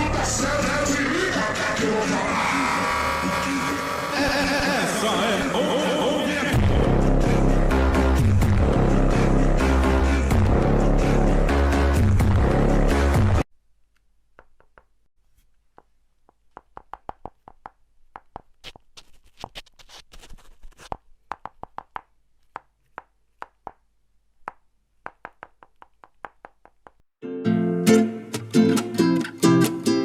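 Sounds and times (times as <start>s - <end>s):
sharp clicks and taps: 15.7s - 18.8s, 20.8s - 23.8s, 24.4s - 27.0s.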